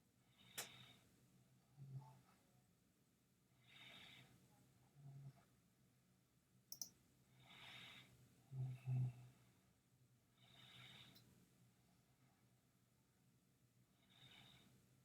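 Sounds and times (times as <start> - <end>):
computer mouse double click: 6.7 - 6.9
soft breaths: 10.3 - 11.3, 13.9 - 14.9.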